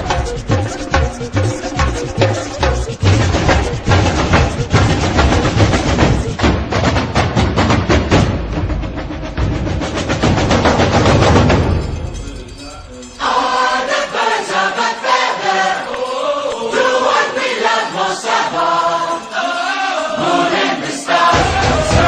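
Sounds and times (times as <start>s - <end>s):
background music with choir: 13.2s - 22.0s.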